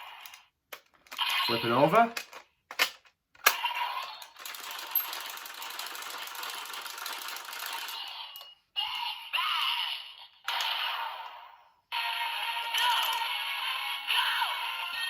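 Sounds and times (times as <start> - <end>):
toy electronic sound effects: 1.1 - 2.1, 7.8 - 15.0
toy belt rattling clicks: 2.0 - 8.5.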